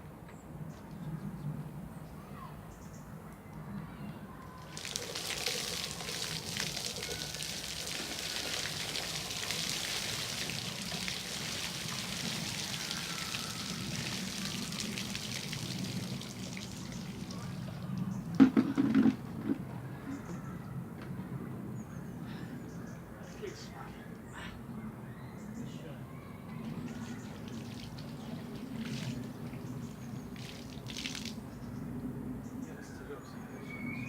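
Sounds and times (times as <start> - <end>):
water pouring and splashing: 4.6 - 19.2, 26.6 - 31.4
loud knocks: 18.4 - 19.6.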